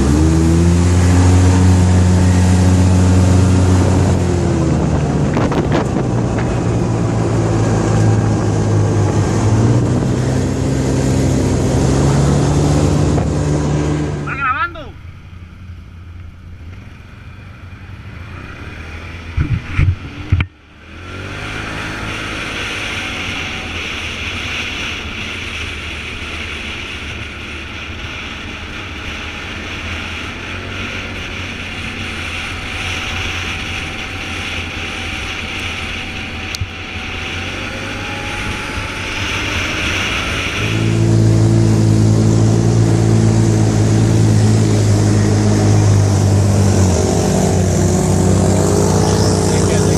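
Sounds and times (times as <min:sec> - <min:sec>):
road and wind noise: 0:00.0 - 0:49.9
vehicle engine running: 0:00.0 - 0:49.9.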